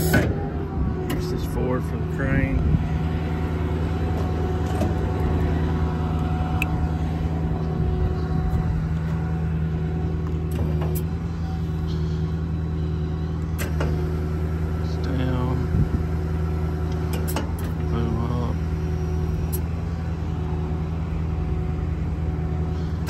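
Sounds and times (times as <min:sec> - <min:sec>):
diesel engine idling: 0:00.0 - 0:23.0.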